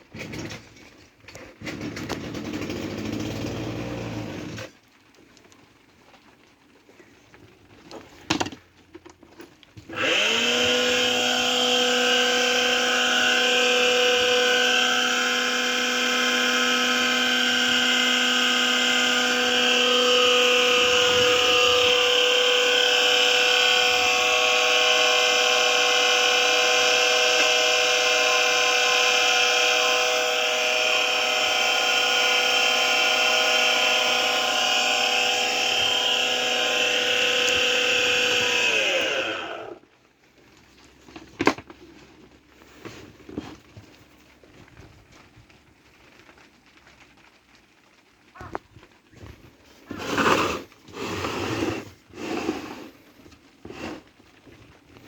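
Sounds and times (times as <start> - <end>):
pump motor whining: 1.6 - 4.7, 9.9 - 39.8.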